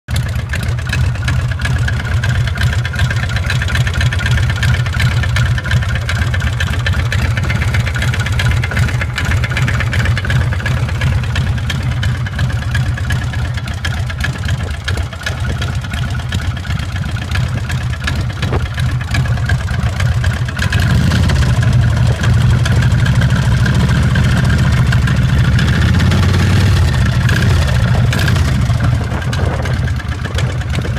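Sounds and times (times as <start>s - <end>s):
motorcycle engine running: 0.1s - 30.9s.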